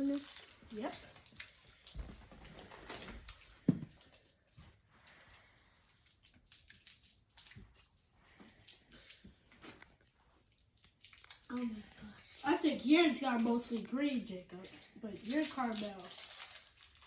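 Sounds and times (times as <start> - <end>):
plastic wrapper crinkling: 0.0 - 4.3, 9.8 - 17.0.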